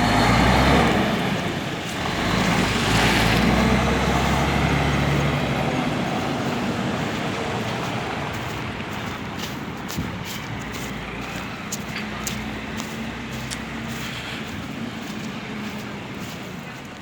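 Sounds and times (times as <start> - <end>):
diesel engine drone: 0.0 - 17.0.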